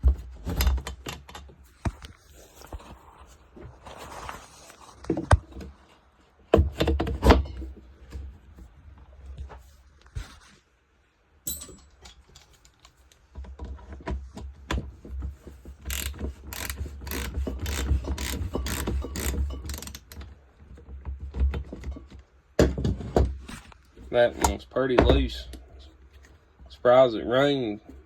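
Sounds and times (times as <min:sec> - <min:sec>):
ratchet wrench clicking: 0:15.8 - 0:20.2.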